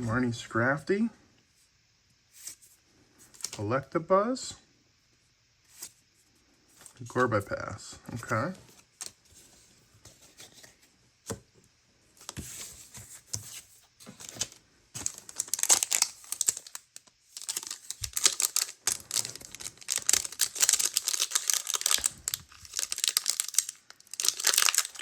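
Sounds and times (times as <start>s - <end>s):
foil wrapper crinkling and tearing: 14.2s - 25.0s.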